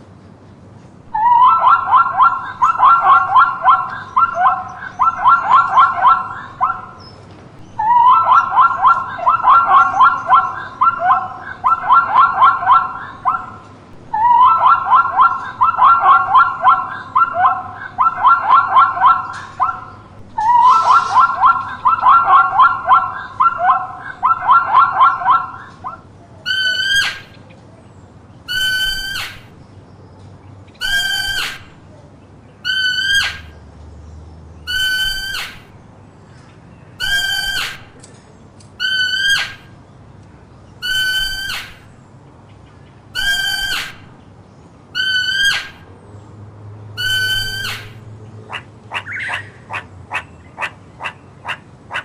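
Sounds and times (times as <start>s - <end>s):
animal harsh call: 1.1s - 7.0s, 7.6s - 27.4s, 28.5s - 29.6s, 30.8s - 31.9s, 32.6s - 33.6s, 34.7s - 35.7s, 37.0s - 38.0s, 38.8s - 39.7s, 40.8s - 41.9s, 43.1s - 44.2s, 45.0s - 45.9s, 47.0s - 52.0s
animal chattering: 1.1s - 7.1s, 7.7s - 27.4s, 28.5s - 29.6s, 30.8s - 31.9s, 32.6s - 33.5s, 34.7s - 35.7s, 37.0s - 38.1s, 38.8s - 39.7s, 40.8s - 41.9s, 43.1s - 44.2s, 45.0s - 45.9s, 47.0s - 52.0s
animal clicking calls: 1.1s - 27.6s, 28.5s - 29.6s, 30.7s - 31.8s, 32.6s - 33.6s, 34.7s - 35.7s, 37.0s - 39.7s, 40.8s - 41.9s, 43.1s - 44.2s, 45.0s - 45.9s, 47.0s - 52.0s.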